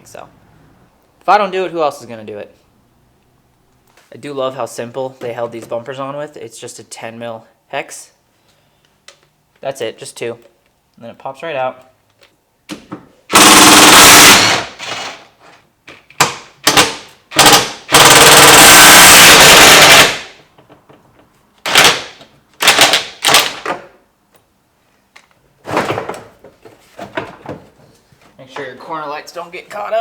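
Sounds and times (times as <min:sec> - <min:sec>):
impact wrench hammering bolts: 0:13.3 - 0:15.2, 0:16.1 - 0:20.4, 0:21.6 - 0:23.9.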